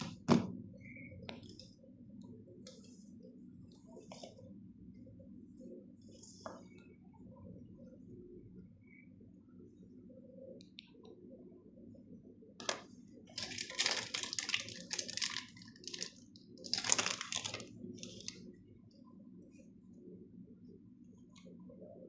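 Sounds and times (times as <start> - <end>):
faint low hum: 0.0 - 22.0
packaging crinkling: 13.4 - 18.4.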